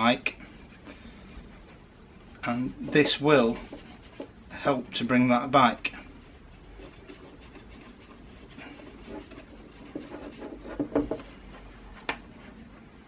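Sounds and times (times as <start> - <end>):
fingers rubbing leather: 2.4 - 4.4, 6.3 - 11.6.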